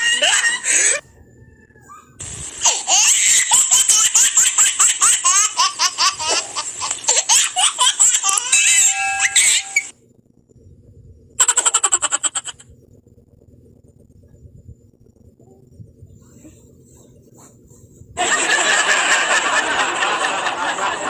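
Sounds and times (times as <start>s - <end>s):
high-pitched laughter: 0.0s - 1.0s, 2.6s - 9.9s, 11.4s - 12.7s.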